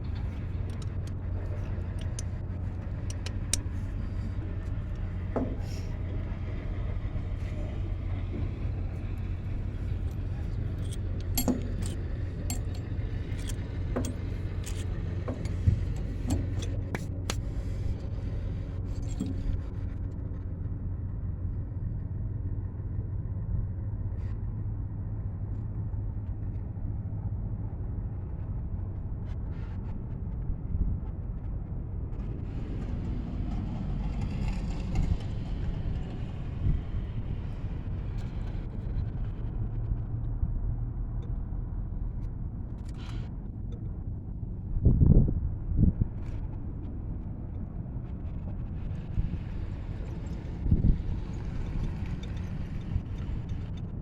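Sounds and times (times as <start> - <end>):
metal clinking and clicking: 0.0 - 4.2, 9.2 - 17.5, 18.9 - 19.5
low machine rumble: 0.0 - 54.0.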